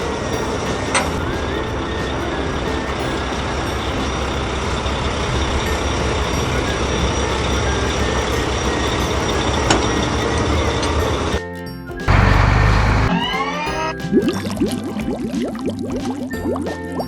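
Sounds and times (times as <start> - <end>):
heavy truck engine running: 0.0 - 11.4, 12.1 - 13.9.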